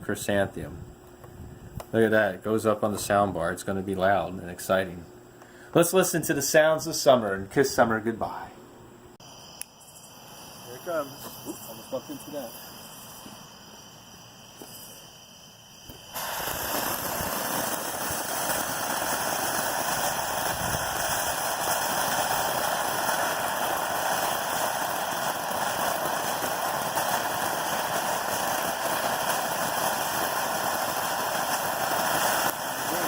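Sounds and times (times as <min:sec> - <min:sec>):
firework fountain hissing: 0:09.2 - 0:33.0.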